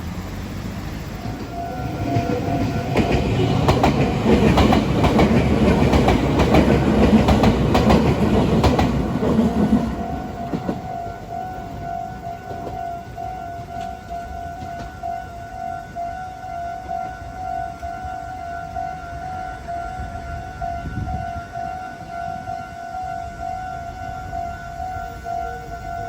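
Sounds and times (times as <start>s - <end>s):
crossing warning bell ringing: 0.1s - 26.0s
train wheels clattering over rail joints: 0.4s - 15.2s.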